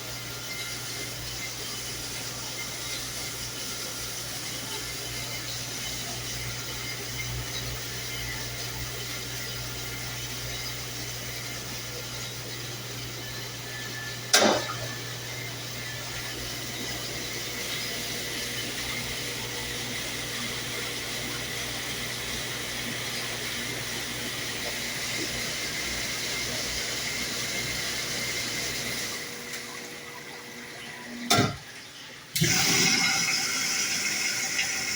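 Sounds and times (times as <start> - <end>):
dishwasher running: 0.0 - 34.9
sharp clunk: 31.3 - 31.6.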